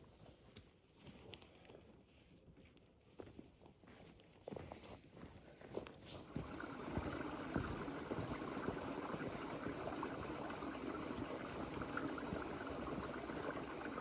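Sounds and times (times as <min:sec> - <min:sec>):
rain patter: 0:06.3 - 0:14.0.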